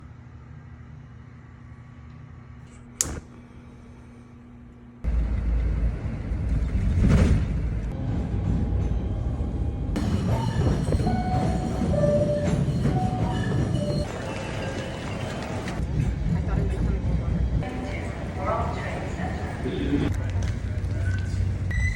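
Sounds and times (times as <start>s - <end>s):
subway train hum: 0.0s - 21.9s
loud train rumble: 5.0s - 20.7s.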